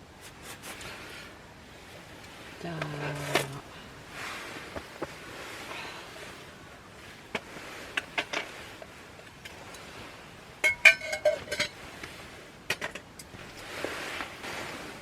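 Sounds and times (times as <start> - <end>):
tableware ringing clinks: 10.6 - 11.8.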